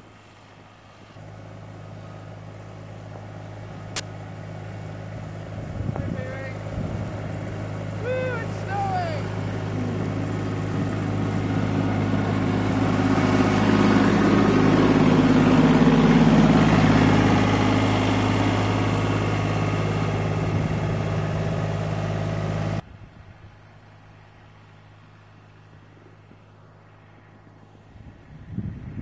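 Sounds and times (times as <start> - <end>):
motor engine running: 1.0 - 22.8.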